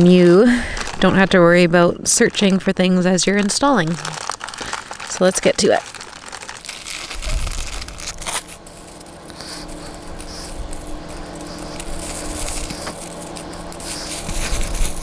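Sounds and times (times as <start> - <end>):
plastic bags rustling: 0.0 - 15.0
steady hum: 0.0 - 15.0
scraping: 3.4 - 15.0.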